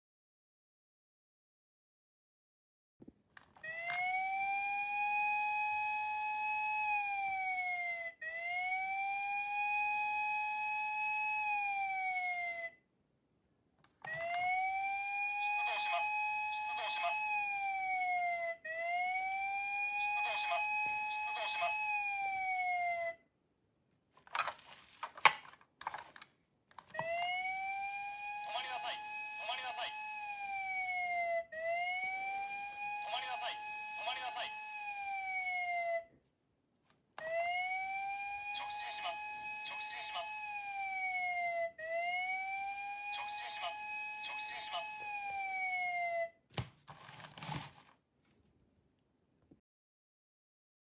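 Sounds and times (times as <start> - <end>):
toy electronic siren wailing: 3.6 - 12.8, 14.0 - 23.2, 27.0 - 36.1, 37.2 - 46.3
handling and rustling: 24.1 - 27.1, 46.5 - 48.5.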